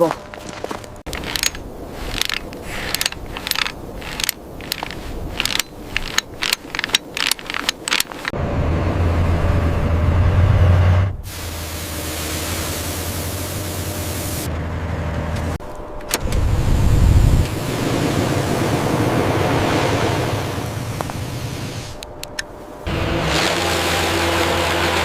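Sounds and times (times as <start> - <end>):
machinery humming: 13.1 - 25.0.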